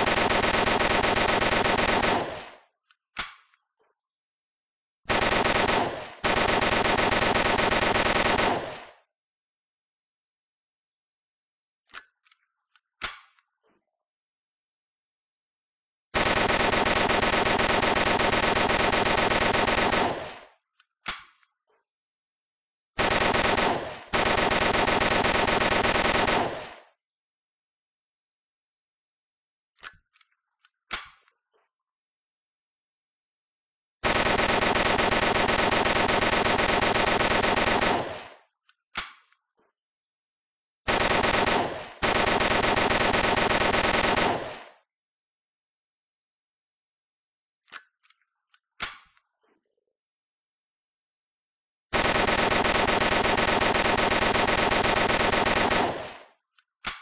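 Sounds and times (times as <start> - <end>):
submachine gun automatic bursts: 0.0 - 2.7, 5.1 - 9.0, 16.2 - 20.6, 23.0 - 27.0, 34.0 - 38.5, 40.9 - 44.8, 51.9 - 56.4
submachine gun bursts: 34.0 - 38.3
sharp gun click: 38.9 - 39.4, 48.8 - 49.3.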